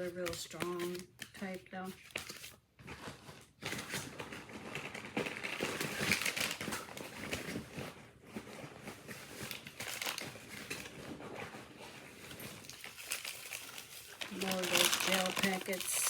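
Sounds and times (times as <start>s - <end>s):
plastic bags crinkling: 0.7s - 16.0s.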